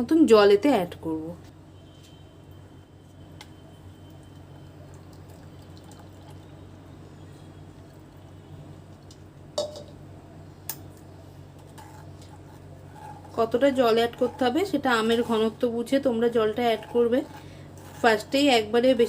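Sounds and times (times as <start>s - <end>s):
water poured into a jar: 4.9s - 6.7s.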